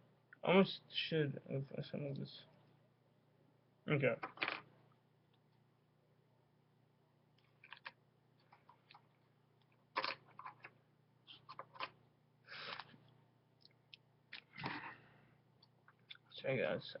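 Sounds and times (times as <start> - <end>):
plastic bricks clicking: 10.0 - 10.7.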